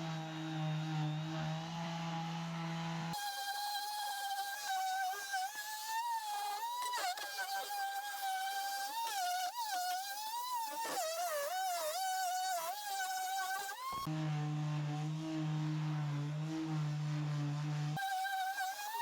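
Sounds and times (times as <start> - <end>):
electric sander whining: 0.0 - 5.7.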